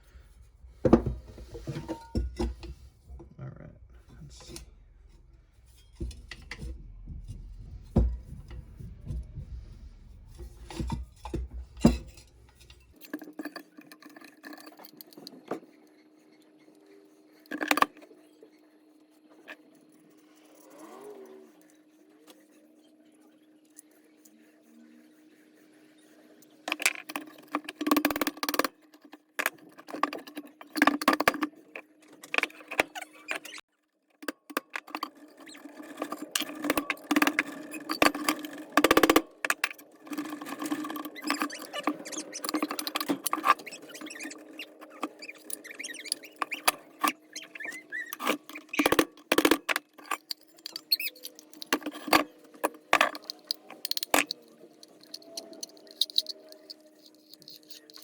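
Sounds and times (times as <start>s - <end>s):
metal gears clinking and scraping: 0.0s - 3.2s, 3.8s - 15.9s, 34.2s - 58.0s
steady background hum: 0.0s - 13.0s.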